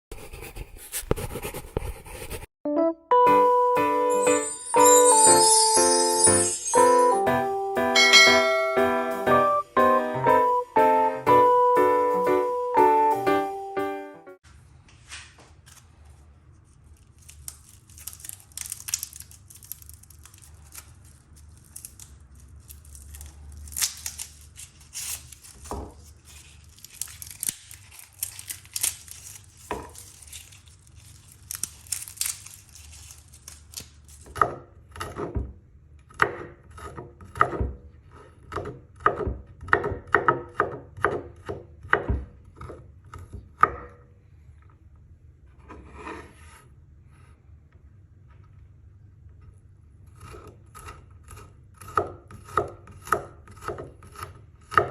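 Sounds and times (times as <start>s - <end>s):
food packaging crinkling and tearing: 15.6s - 34.3s.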